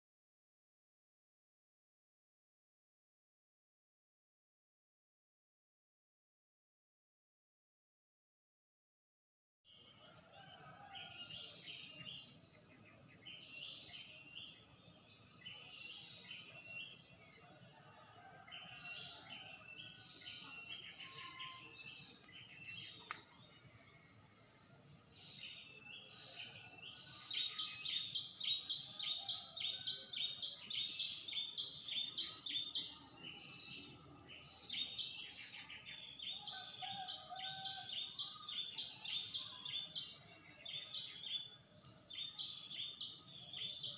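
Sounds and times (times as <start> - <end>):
high-pitched insect drone: 20.0 - 23.2.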